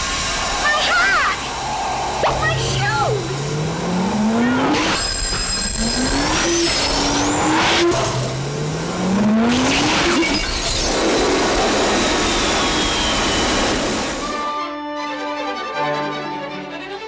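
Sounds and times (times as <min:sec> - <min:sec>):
car engine accelerating: 0:01.8 - 0:14.2
tyre squeal: 0:04.7 - 0:07.4.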